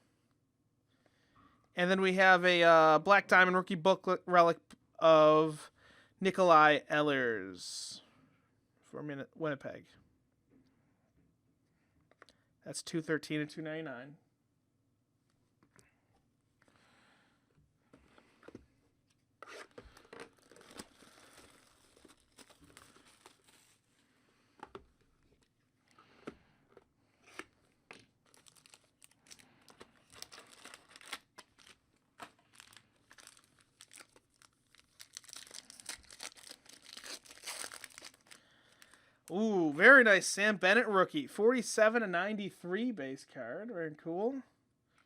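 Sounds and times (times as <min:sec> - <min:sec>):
foil wrappers tearing and crinkling: 0:19.9 - 0:23.8, 0:28.2 - 0:39.0.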